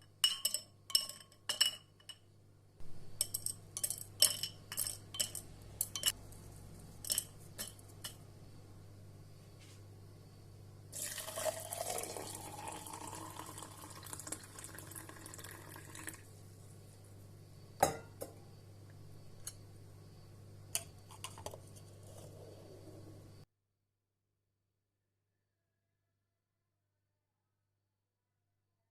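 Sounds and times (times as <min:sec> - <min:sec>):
liquid pouring into cup: 0:11.0 - 0:16.2.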